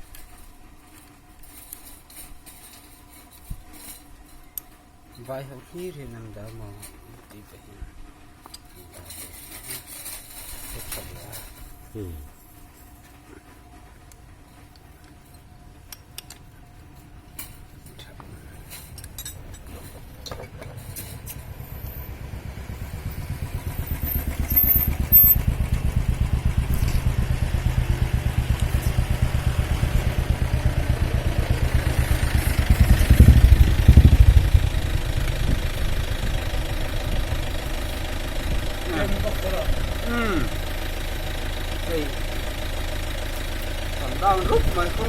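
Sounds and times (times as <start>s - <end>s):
vehicle engine running: 18.6s - 45.0s.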